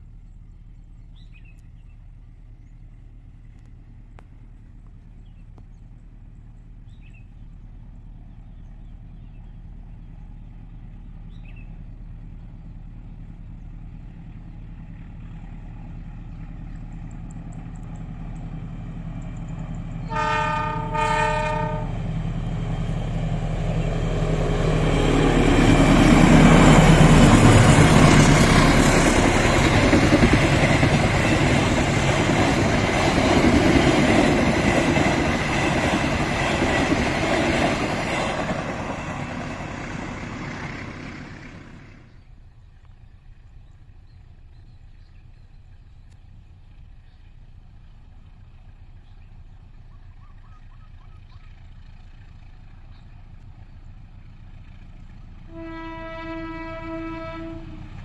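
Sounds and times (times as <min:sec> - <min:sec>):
train rumble: 0:00.0 - 0:58.0
train wheels on rails: 0:07.9 - 0:44.5
diesel locomotive horn blasts: 0:20.0 - 0:22.2, 0:55.4 - 0:58.0.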